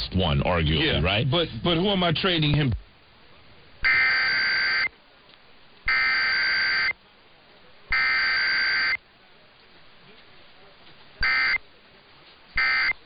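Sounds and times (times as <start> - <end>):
buzzing two-tone data bursts: 3.8 - 4.9, 5.9 - 7.0, 7.9 - 9.0, 11.2 - 11.6, 12.6 - 13.0.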